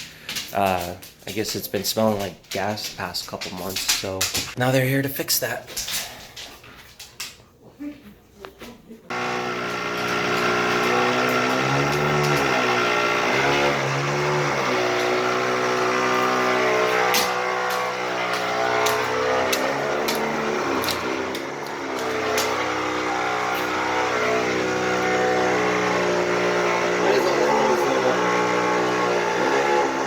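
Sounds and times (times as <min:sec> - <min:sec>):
machinery engine running: 0:09.1 - 0:30.0.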